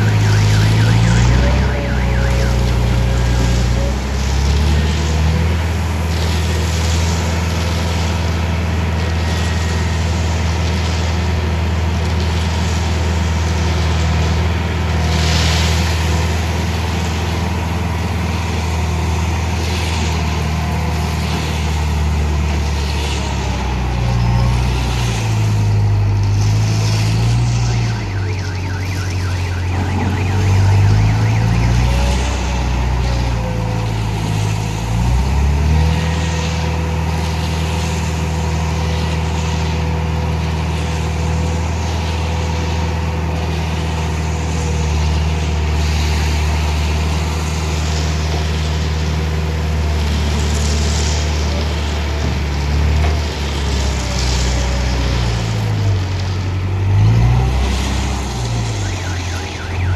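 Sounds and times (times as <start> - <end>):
warbling siren-like alarm: 0.0 - 5.9, 26.8 - 35.5, 58.1 - 59.9
diesel engine running: 0.0 - 59.9.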